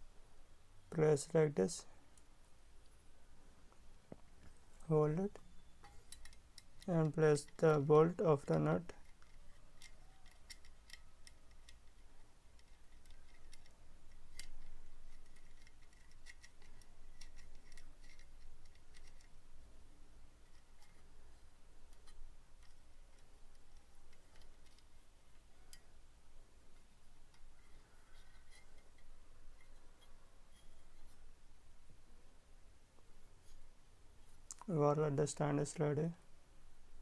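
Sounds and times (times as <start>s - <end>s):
small metal clicks and taps: 5.8s - 19.4s.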